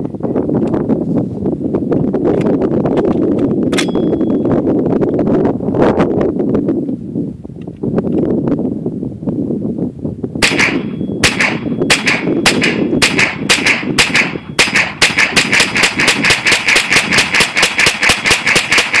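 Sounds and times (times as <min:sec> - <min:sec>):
rifle shots: 0:10.4 - 0:19.0.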